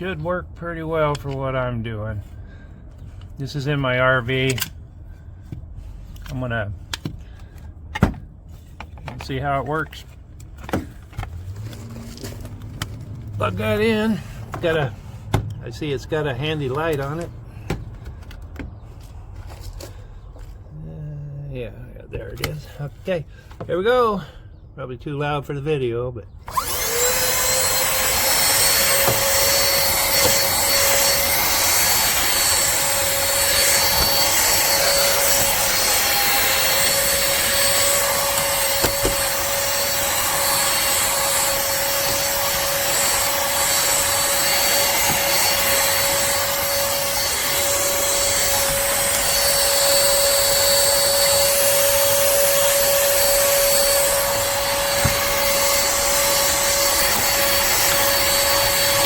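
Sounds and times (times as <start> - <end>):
handheld vacuum running: 10.6 - 15.5, 26.5 - 59.0.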